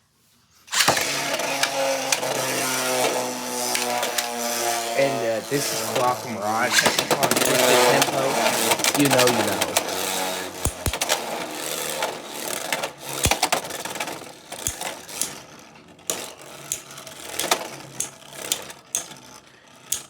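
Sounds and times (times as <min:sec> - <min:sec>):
spinning tops whirring: 0:00.7 - 0:20.0
spinning tops clashing: 0:10.6 - 0:11.1, 0:13.2 - 0:13.6.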